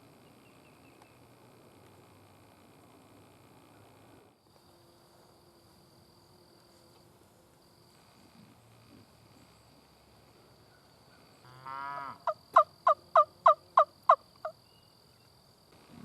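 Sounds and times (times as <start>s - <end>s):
turkey call yelps: 12.2s - 14.6s.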